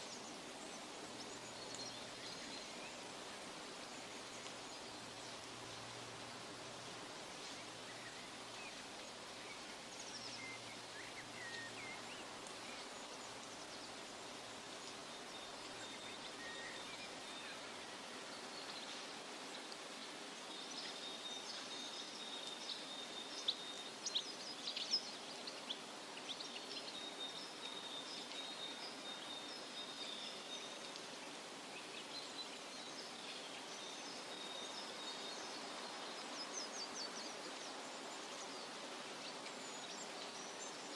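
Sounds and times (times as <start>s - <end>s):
steady soft hiss: 0.0s - 40.9s.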